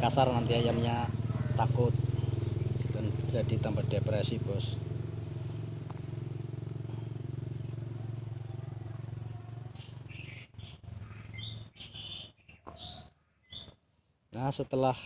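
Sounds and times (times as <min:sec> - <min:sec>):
engine humming: 0:00.0 - 0:12.9
high bird chirps: 0:01.1 - 0:03.3, 0:07.4 - 0:13.8.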